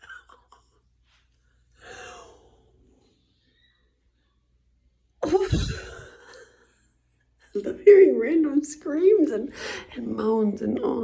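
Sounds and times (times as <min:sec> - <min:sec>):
woman sighing: 0:05.2 - 0:06.2.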